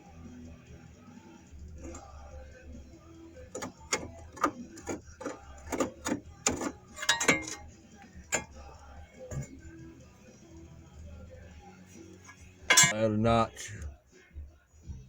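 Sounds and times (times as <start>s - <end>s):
metal knocks and clinks: 3.6s - 7.7s, 12.7s - 13.0s.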